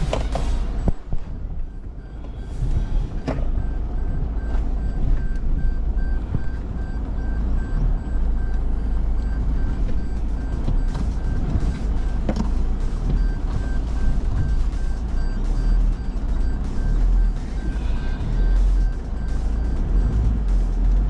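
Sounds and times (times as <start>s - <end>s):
vehicle body knocks and jolts: 0.0s - 6.6s
pickup engine low rumble: 0.0s - 21.0s
rapid electronic beeping: 0.0s - 21.0s.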